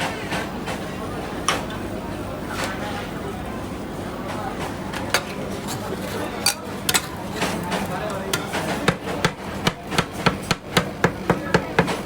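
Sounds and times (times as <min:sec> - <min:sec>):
metal spatulas clacking on cold plate: 0:05.2 - 0:10.4.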